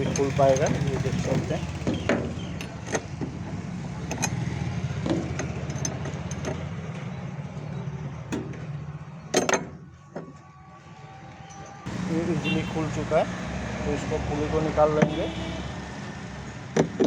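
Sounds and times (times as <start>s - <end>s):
metal clatter: 0.0s - 7.1s.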